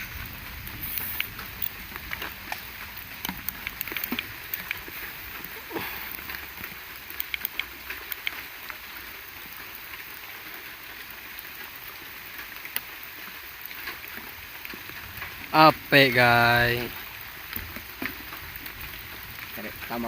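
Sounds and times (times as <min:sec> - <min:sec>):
light rain pattering: 0:00.0 - 0:20.0
drip ticks: 0:01.0 - 0:08.7.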